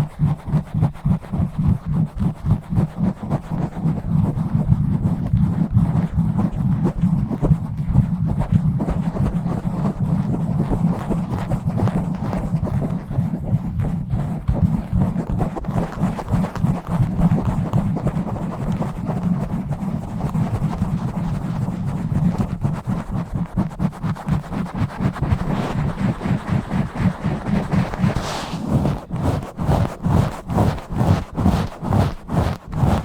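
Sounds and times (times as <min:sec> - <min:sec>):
microphone being scratched: 0:24.2 - 0:33.0.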